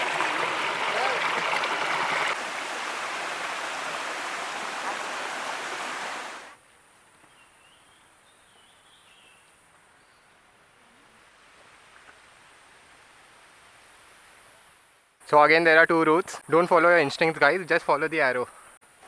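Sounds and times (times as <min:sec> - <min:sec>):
stream rushing: 0:00.0 - 0:06.6.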